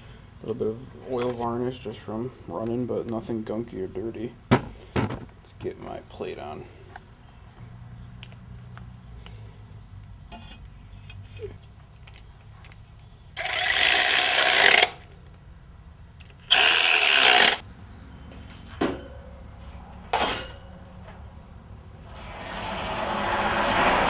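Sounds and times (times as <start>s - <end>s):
power tool driving bolts: 13.4s - 15.0s, 16.4s - 17.6s, 22.1s - 24.0s.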